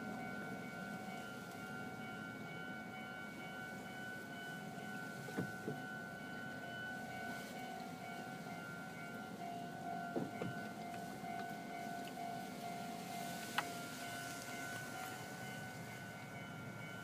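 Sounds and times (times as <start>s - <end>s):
level crossing bell ringing: 0.0s - 17.0s.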